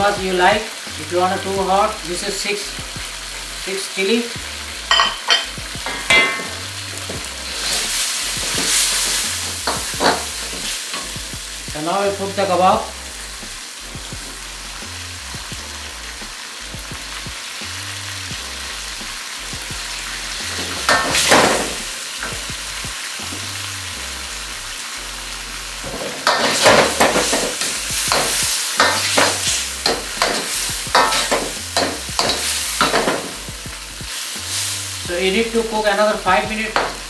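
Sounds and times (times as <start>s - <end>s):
meat sizzling in sauce: 0.0s - 37.0s
spatula scraping pan: 25.8s - 33.4s.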